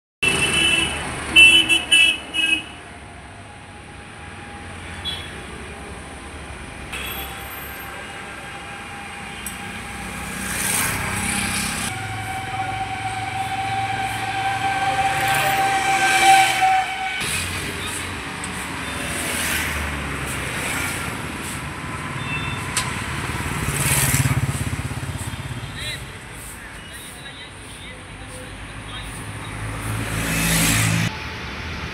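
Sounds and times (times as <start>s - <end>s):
held vehicle horn: 0.2s - 2.8s, 11.8s - 17.4s
vehicle horn toots: 0.2s - 2.8s, 11.9s - 17.2s
road traffic: 0.2s - 31.9s.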